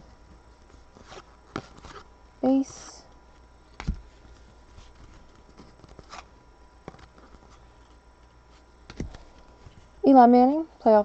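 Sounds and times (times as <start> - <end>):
trading cards flipped through: 0.6 - 2.1, 3.3 - 9.9.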